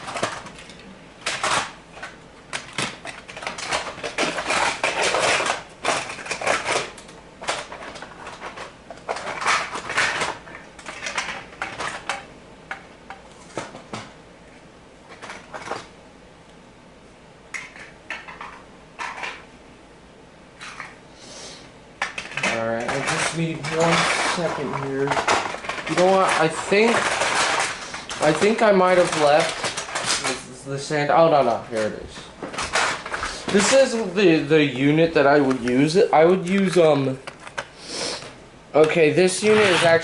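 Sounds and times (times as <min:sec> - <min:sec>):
packaging rustling: 0:00.0 - 0:12.2, 0:22.1 - 0:40.0.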